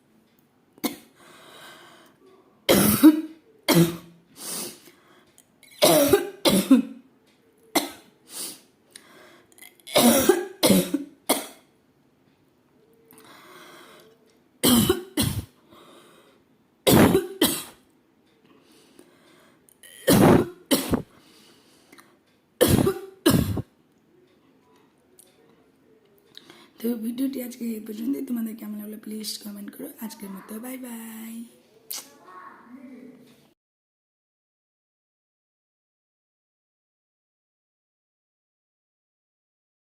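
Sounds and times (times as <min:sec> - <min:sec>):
woman coughing: 0:02.7 - 0:04.1, 0:05.7 - 0:06.9, 0:09.9 - 0:11.6, 0:14.6 - 0:15.5, 0:16.9 - 0:17.8, 0:19.9 - 0:21.1, 0:22.6 - 0:23.6.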